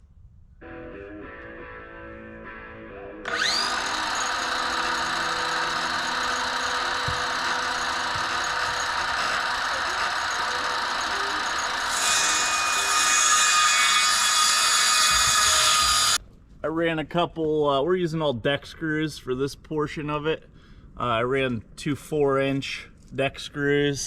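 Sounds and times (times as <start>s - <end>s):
power drill driving screws: 3.3s - 16.2s.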